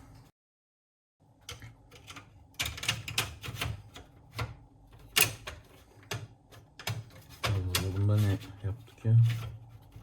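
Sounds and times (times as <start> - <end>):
computer parts clicking and knocking: 1.4 - 8.6.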